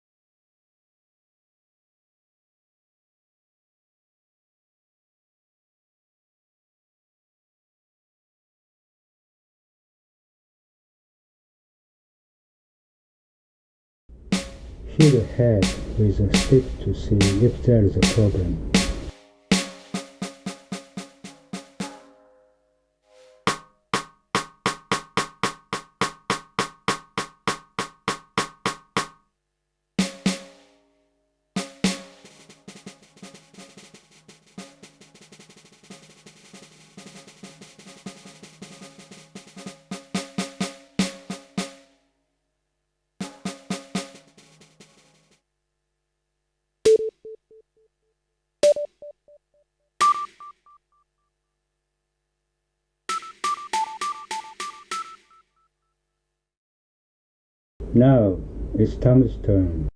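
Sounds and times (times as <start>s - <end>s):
electronic snare drum hits: 14.2s - 22.1s, 23.5s - 29.2s, 30.0s - 30.7s, 31.6s - 41.8s, 43.2s - 45.1s, 48.6s - 49.0s, 50.0s - 50.6s, 53.1s - 55.3s.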